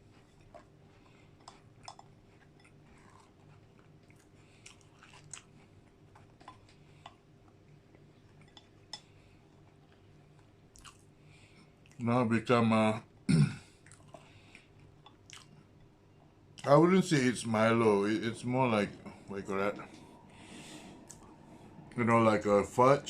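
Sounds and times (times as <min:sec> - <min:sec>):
low steady hum: 0:00.0 - 0:23.0
wet chewing mouth clicks: 0:10.8 - 0:11.0.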